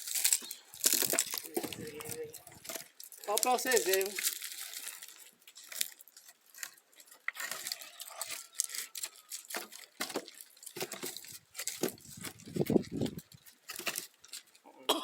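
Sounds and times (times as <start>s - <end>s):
firewood knocking and snapping: 0.0s - 14.6s
crackly rustling: 0.0s - 14.7s.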